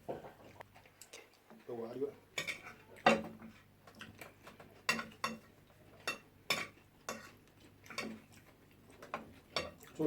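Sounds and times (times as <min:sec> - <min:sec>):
cutlery clinking on plates: 0:02.4 - 0:08.4, 0:09.0 - 0:09.9.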